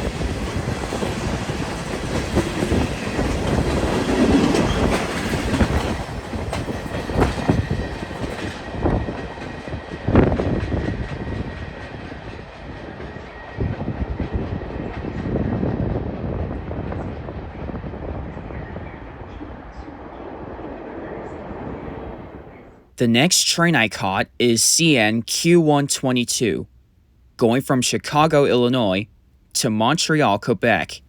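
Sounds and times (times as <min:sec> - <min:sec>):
train wheels clacking over rail joints: 0:00.0 - 0:09.8.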